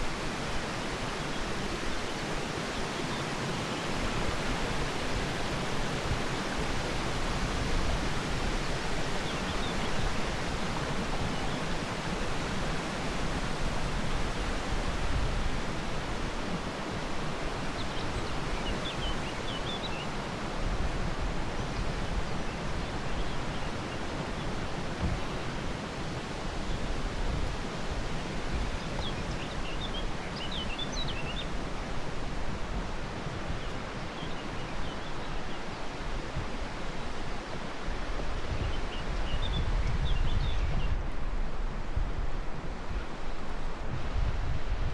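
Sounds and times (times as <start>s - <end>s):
rushing outdoor ambience: 0.0s - 44.9s.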